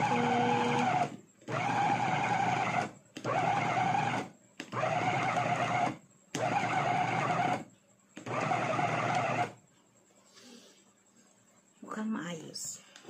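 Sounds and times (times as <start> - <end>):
meat mincer motor whirring: 0.0 - 7.6, 8.2 - 9.6.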